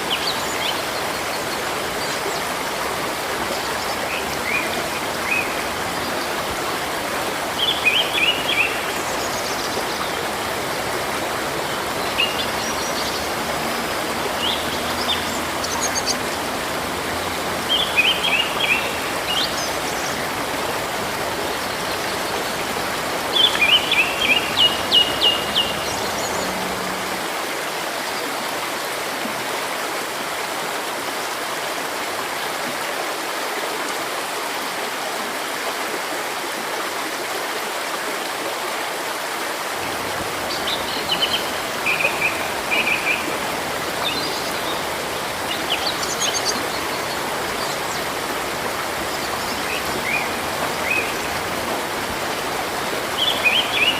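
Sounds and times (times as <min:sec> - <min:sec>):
river water running: 0:00.0 - 0:53.9
small birds chirping: 0:11.7 - 0:26.9.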